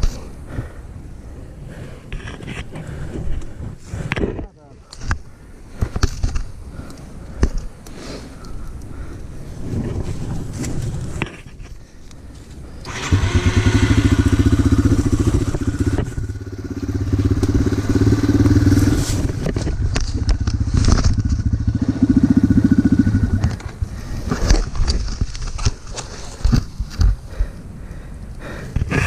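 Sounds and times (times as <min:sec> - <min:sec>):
motorcycle engine revving: 0:12.8 - 0:24.4.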